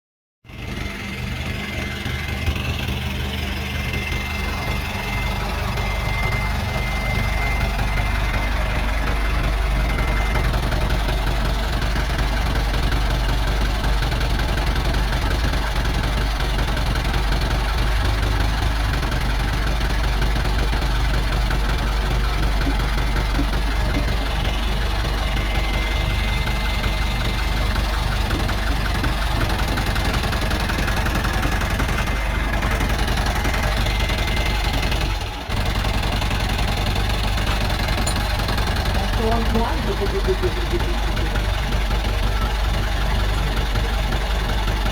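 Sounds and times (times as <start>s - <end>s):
diesel engine knocking: 0.4s - 44.9s
thin high-pitched whine: 1.6s - 12.2s, 37.3s - 41.5s.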